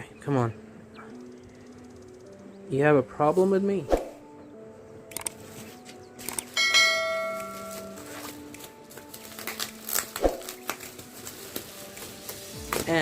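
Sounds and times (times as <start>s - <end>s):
soft sustained background tones: 4.3s - 8.3s
sharp clicks: 5.1s - 5.4s, 6.2s - 6.6s
bell-like chime: 6.6s - 8.0s.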